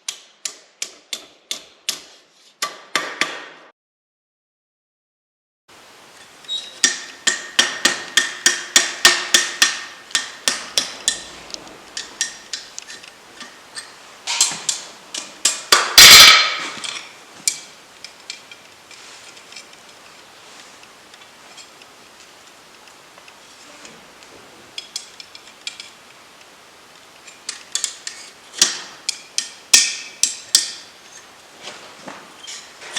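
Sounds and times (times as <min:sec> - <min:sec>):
harsh metallic clash: 0:06.8 - 0:17.7.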